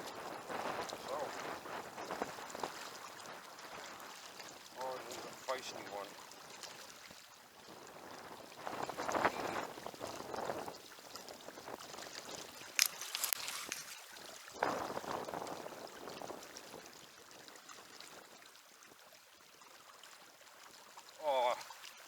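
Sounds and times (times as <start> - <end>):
water splashing and running: 0.0 - 22.0.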